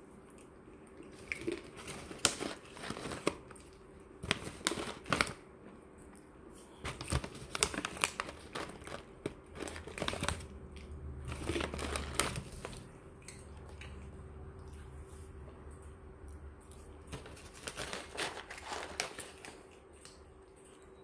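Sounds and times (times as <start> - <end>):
plastic crinkling and rustling: 1.2 - 5.4, 6.6 - 10.5, 11.2 - 12.9, 17.1 - 19.8.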